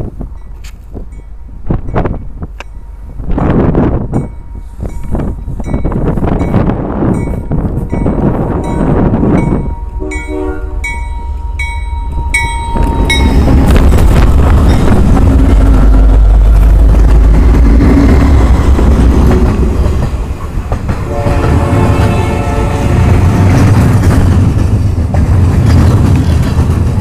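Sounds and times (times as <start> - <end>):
locomotive engines rumbling: 0.0 - 27.0
locomotive air horn: 9.8 - 13.8, 21.1 - 23.6.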